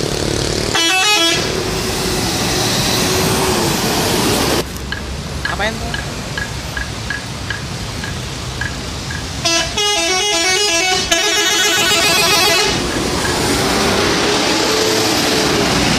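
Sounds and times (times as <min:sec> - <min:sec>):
bus engine running: 0:00.0 - 0:15.9
bus horn playing melody: 0:00.7 - 0:01.5, 0:09.4 - 0:12.9.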